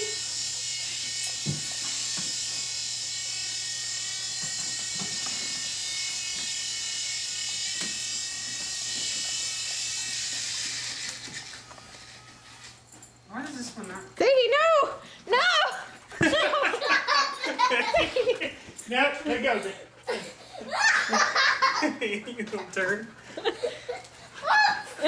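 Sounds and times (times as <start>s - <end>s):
toy helicopter motor buzzing: 0.0s - 12.8s, 16.2s - 18.4s, 20.1s - 22.0s, 23.3s - 25.0s.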